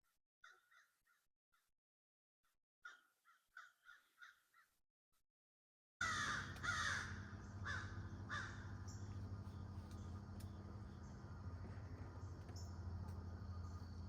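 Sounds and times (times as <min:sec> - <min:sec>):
crows cawing: 0:00.4 - 0:01.0, 0:02.8 - 0:04.7, 0:06.0 - 0:10.0
steady low hum: 0:06.0 - 0:14.0.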